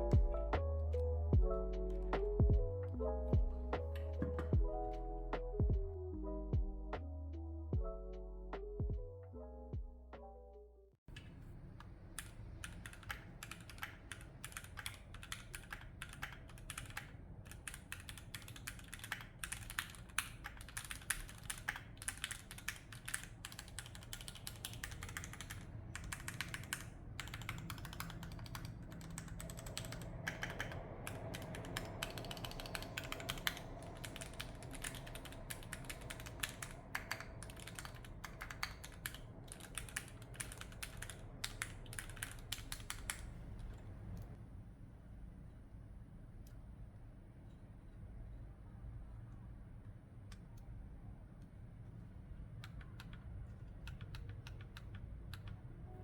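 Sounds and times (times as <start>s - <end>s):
mechanical keyboard typing: 12.2s - 43.4s, 52.6s - 55.6s.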